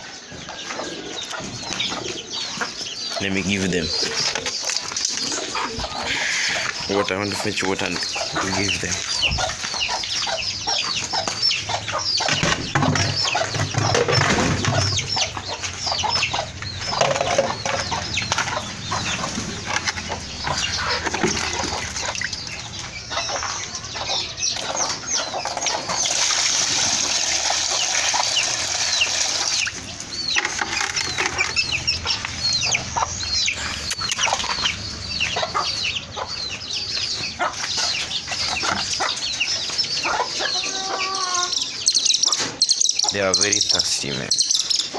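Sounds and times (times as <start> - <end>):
hens and chicks clucking: 0.0 - 44.9
water pouring: 25.8 - 29.8.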